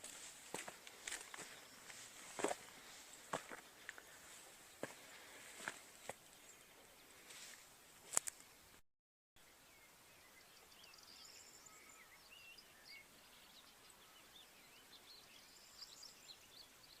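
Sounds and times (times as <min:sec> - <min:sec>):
small birds chirping: 0:00.0 - 0:08.7, 0:09.4 - 0:17.0
soft outdoor hiss: 0:00.0 - 0:08.8, 0:09.4 - 0:17.0.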